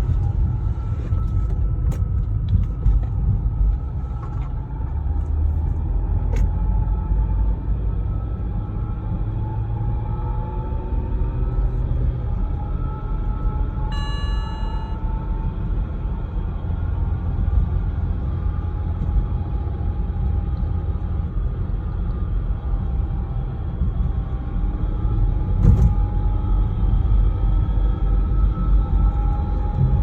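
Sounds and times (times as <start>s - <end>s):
car road rumble: 0.0s - 30.0s
thin whine drifting in pitch: 13.8s - 15.2s
brief ringing tone: 13.9s - 15.2s.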